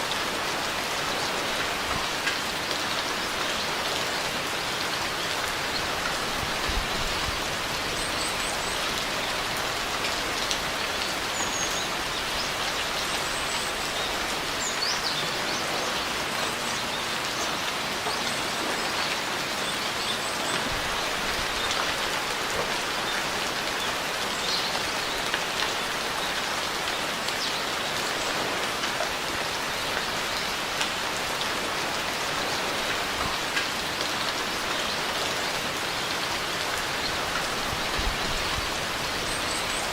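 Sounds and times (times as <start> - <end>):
rain pattering on surfaces: 0.0 - 39.9.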